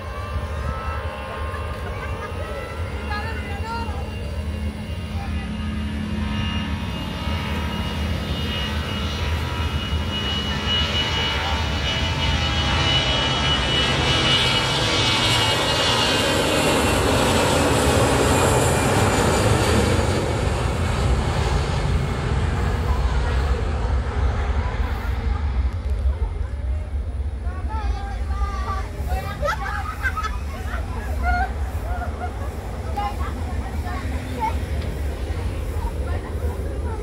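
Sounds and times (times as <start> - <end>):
airplane engines at takeoff power: 0.0 - 37.0.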